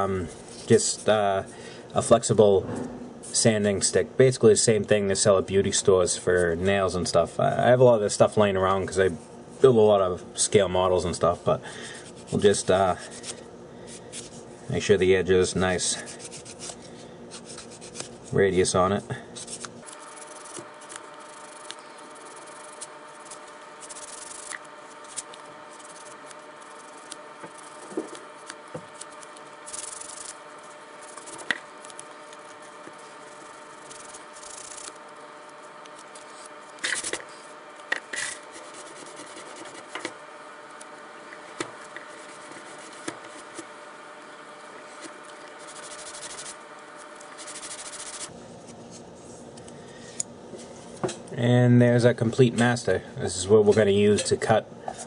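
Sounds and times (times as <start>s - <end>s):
steady hum: 0.0s - 55.0s
sanding stick rubbing plastic edge: 16.1s - 18.2s, 19.4s - 32.0s, 32.8s - 35.0s, 38.2s - 40.0s, 45.5s - 46.6s, 47.3s - 48.3s.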